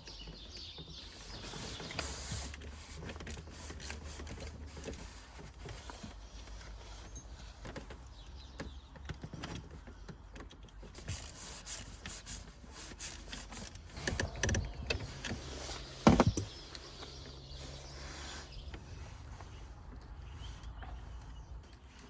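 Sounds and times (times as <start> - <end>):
tools clicking and rattling: 8.8 - 17.3.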